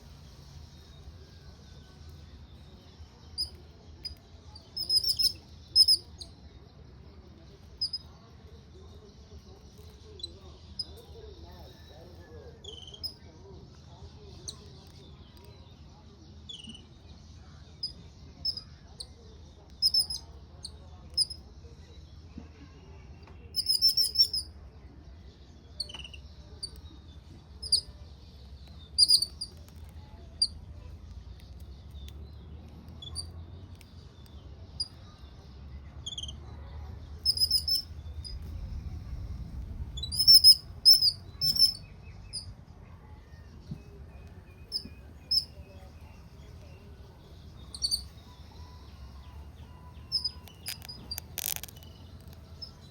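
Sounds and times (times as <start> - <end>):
birds chirping: 0.0 - 52.9
faint low background hum: 0.0 - 52.9
bird trills: 3.4 - 6.1, 37.2 - 37.9, 40.1 - 42.5, 47.7 - 52.3.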